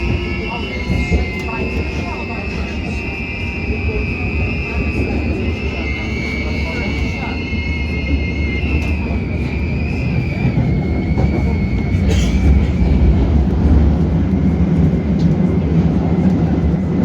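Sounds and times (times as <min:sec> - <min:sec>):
high wavering whistle: 0:00.0 - 0:12.0
train rumbling: 0:00.0 - 0:17.0.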